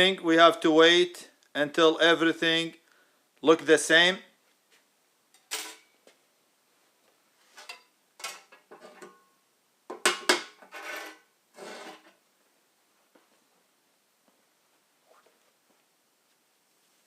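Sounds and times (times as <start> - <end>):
metal tools clinking and scraping: 5.4 - 5.9.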